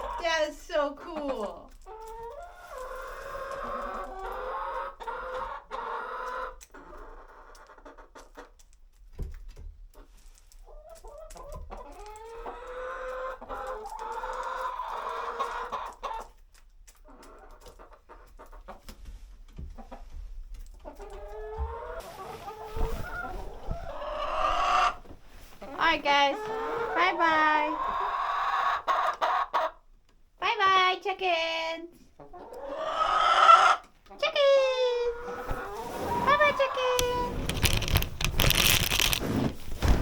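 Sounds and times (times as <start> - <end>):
hen clucking and calling: 1.0 - 8.5, 11.1 - 16.3, 20.8 - 29.8, 32.2 - 38.0.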